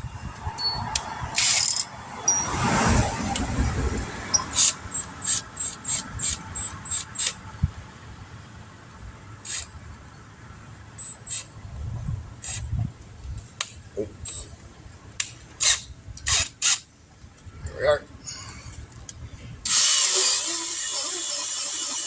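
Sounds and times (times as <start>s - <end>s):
short sharp high squeaks: 19.7s - 22.0s.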